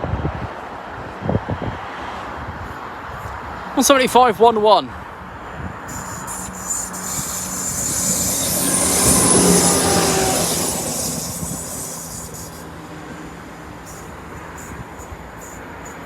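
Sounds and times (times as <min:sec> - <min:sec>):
train engine hum: 0:05.2 - 0:16.0
high-pitched wheel squeal: 0:05.9 - 0:16.0.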